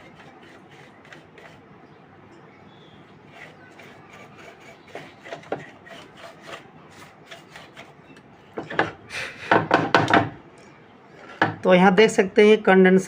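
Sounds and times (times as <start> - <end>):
dry scrubbing on a circuit board: 0.0 - 1.7, 3.1 - 8.2.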